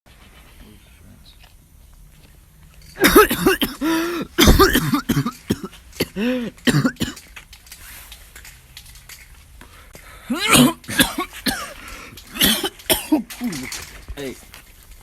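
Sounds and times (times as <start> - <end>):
person coughing: 3.0 - 7.2, 10.3 - 13.7.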